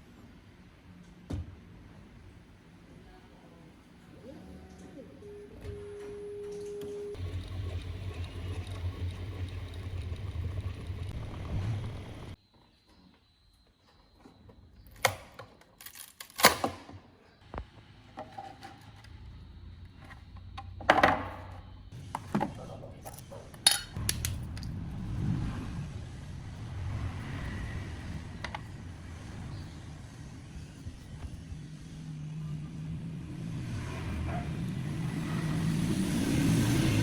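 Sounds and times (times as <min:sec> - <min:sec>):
low rumbling: 0:07.2 - 0:12.4, 0:22.6 - 0:37.0.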